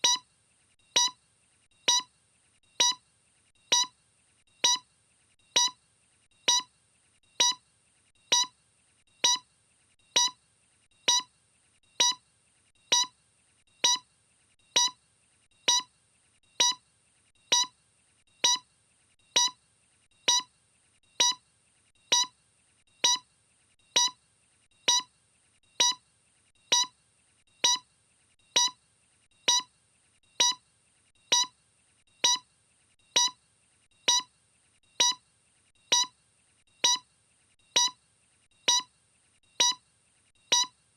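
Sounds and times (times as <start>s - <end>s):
electronic beeps: 0.0s - 0.2s, 1.0s - 1.2s, 1.9s - 2.1s, 2.8s - 3.0s, 3.7s - 3.9s, 4.6s - 4.8s, 5.6s - 5.8s, 6.5s - 6.7s, 7.4s - 7.6s, 8.3s - 8.5s, 9.2s - 9.4s, 10.2s - 10.4s, 11.1s - 11.3s, 12.0s - 12.2s, 12.9s - 13.1s, 13.8s - 14.0s, 14.8s - 15.0s, 15.7s - 15.9s, 16.6s - 16.8s, 17.5s - 17.7s, 18.4s - 18.6s, 19.4s - 19.6s, 20.3s - 20.5s, 21.2s - 21.4s, 22.1s - 22.3s, 23.0s - 23.2s, 24.0s - 24.2s, 24.9s - 25.1s, 25.8s - 26.0s, 26.7s - 26.9s, 27.6s - 27.8s, 28.6s - 28.8s, 29.5s - 29.7s, 30.4s - 30.6s, 31.3s - 31.5s, 32.2s - 32.4s, 33.2s - 33.4s, 34.1s - 34.3s, 35.0s - 35.2s, 35.9s - 36.1s, 36.8s - 37.0s, 37.8s - 38.0s, 38.7s - 38.9s, 39.6s - 39.8s, 40.5s - 40.7s.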